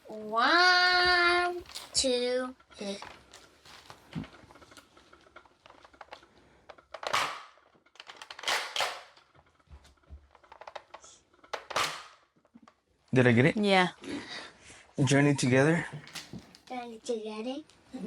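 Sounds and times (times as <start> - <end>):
plastic toy blaster clicks: 7.0 - 9.2.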